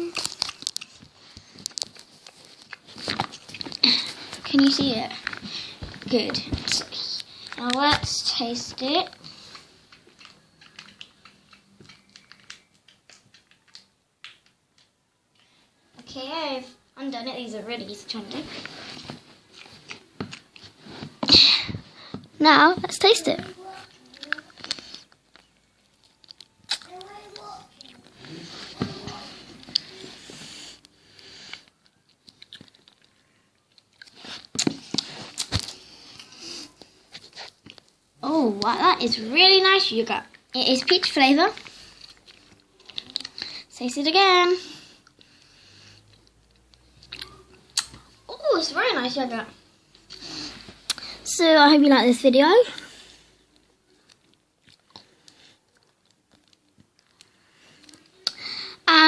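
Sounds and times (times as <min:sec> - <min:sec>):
plastic crinkling: 0:00.0 - 0:14.9, 0:53.5 - 0:58.2
wet mouth clicks and lip smacks: 0:09.5 - 0:14.9, 0:24.1 - 0:27.0, 0:31.5 - 0:33.1, 0:46.1 - 0:48.1, 0:50.9 - 0:51.1, 0:54.1 - 0:58.4.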